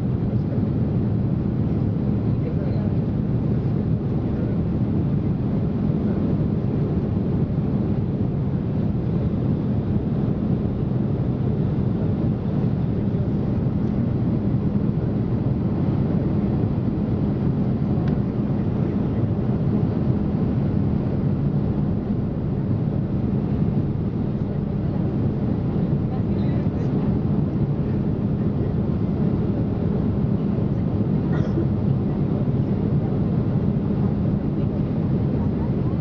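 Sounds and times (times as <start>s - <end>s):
jet airliner cabin drone: 0.0s - 36.0s.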